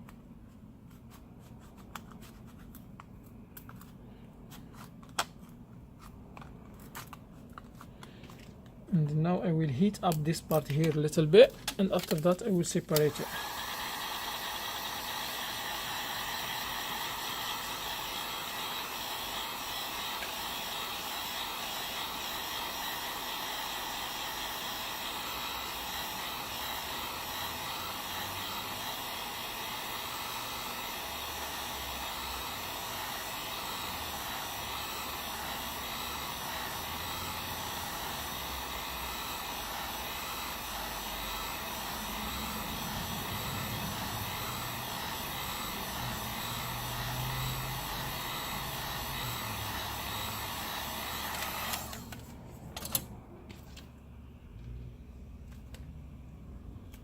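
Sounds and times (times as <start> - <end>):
hot-air blower running: 9.8 - 52.3.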